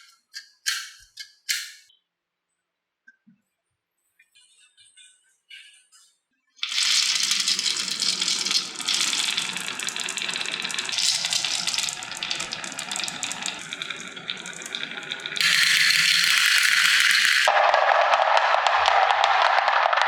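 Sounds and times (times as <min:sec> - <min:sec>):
marbles rattling down wooden track: 0:06.6 - 0:17.5.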